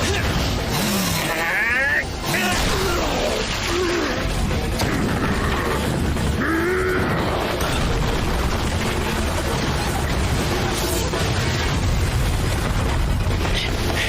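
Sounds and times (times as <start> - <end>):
crashes: 0.0 - 14.0
rumbling fight sound effects: 0.0 - 14.0.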